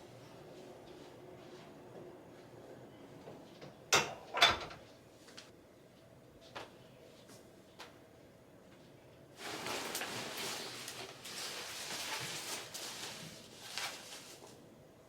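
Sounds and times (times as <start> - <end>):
clothes rustling: 9.4 - 14.6.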